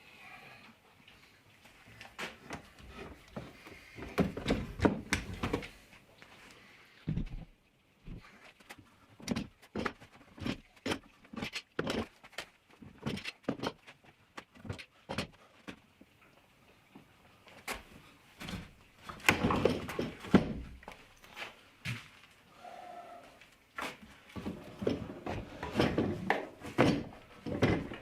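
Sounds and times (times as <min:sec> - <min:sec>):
objects knocking and clattering: 0:09.2 - 0:15.8, 0:18.4 - 0:21.0, 0:24.4 - 0:28.0.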